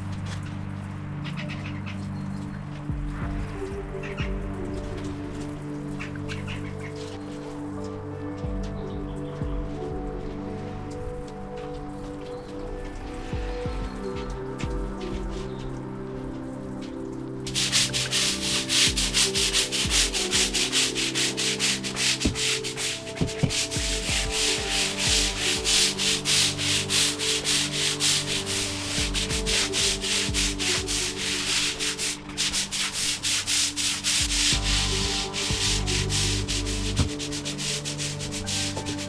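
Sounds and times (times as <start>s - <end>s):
wire brush scrubbing wet paving: 16.9s - 39.0s.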